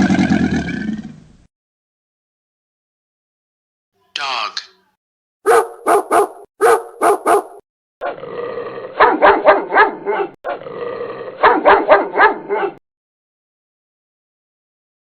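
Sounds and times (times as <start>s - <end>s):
dog barking: 5.4s - 7.6s, 9.0s - 10.4s, 11.4s - 12.8s
dog growling: 8.0s - 12.8s.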